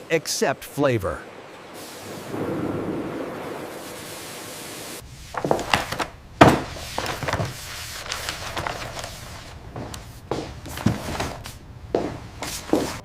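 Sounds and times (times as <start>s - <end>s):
steady hiss: 0.0s - 13.0s
irregular knocks and thuds: 5.4s - 7.6s, 9.7s - 13.0s.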